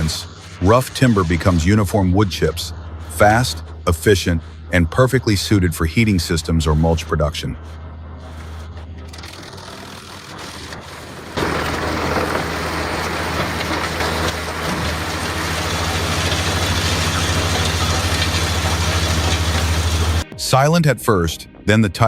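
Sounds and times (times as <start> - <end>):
wood chipper engine hum: 7.6 - 20.3.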